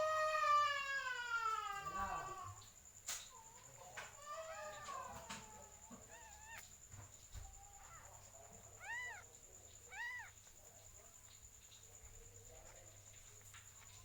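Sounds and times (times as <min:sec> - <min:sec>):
cat mewing: 0:03.4 - 0:06.8, 0:07.4 - 0:10.5.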